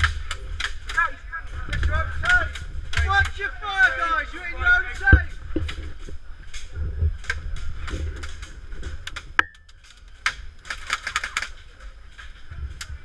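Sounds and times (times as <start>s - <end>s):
airsoft guns clicking: 0.0s - 4.2s, 6.5s - 12.9s.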